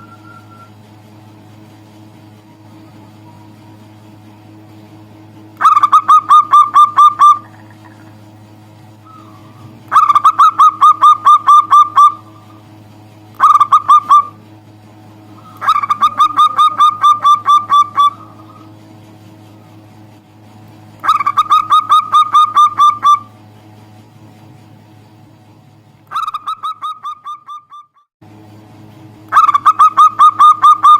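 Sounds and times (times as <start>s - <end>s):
steady low hum: 0.0s - 30.9s
dove cooing: 5.6s - 8.2s, 9.0s - 12.6s, 13.4s - 14.4s, 15.3s - 18.8s, 21.0s - 23.3s.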